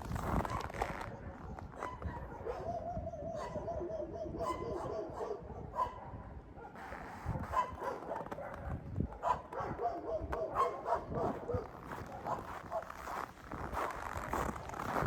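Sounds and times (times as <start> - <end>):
dog yipping: 1.5 - 13.2.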